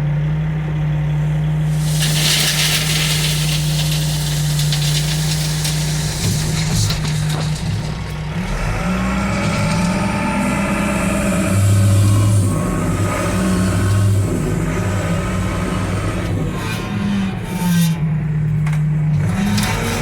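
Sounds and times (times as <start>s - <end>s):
heavy diesel engine running: 0.0s - 20.0s
hiss: 1.7s - 8.1s.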